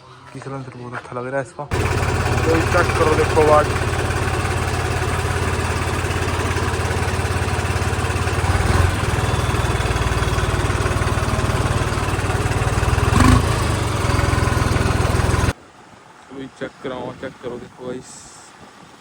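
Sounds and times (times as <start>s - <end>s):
tractor diesel engine running: 1.7s - 15.6s.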